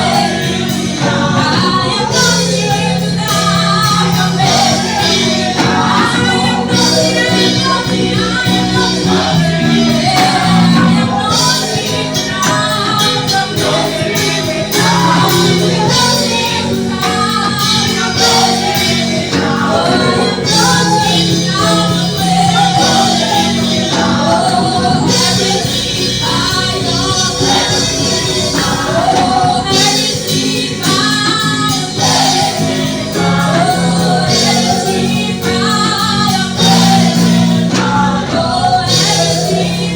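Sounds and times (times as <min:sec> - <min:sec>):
band accompaniment: 0:00.0 - 0:39.9
gospel choir singing: 0:00.0 - 0:39.9
steady percussion: 0:00.0 - 0:39.9.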